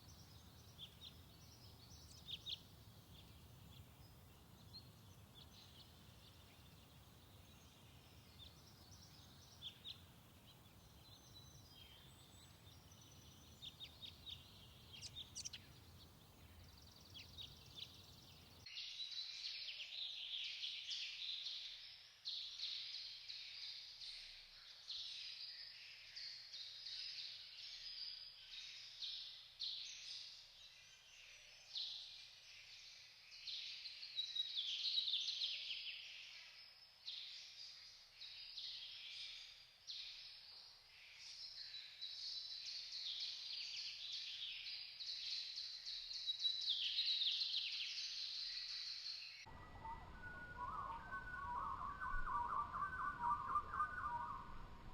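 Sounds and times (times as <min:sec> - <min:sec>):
birds chirping: 0:00.0 - 0:18.6, 0:49.5 - 0:54.9
dense chorus of birdsong: 0:00.0 - 0:54.9.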